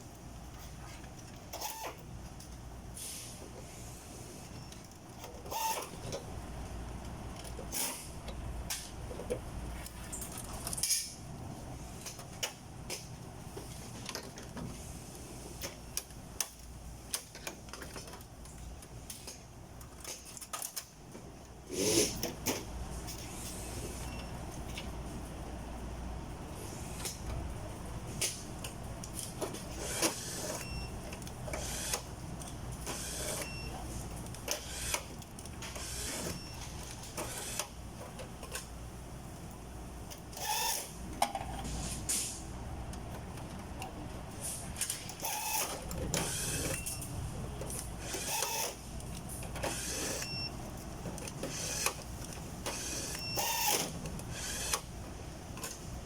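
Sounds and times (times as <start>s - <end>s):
hissing and clattering bursts: 3.0s - 4.4s, 41.5s - 42.5s.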